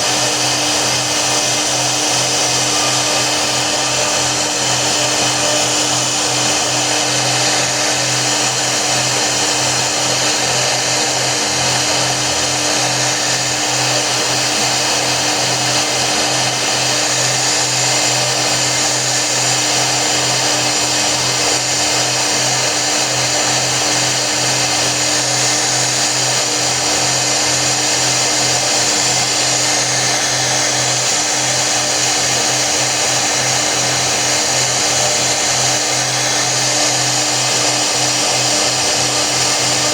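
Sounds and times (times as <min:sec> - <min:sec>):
cnc router motor humming: 0:00.0 - 0:39.9.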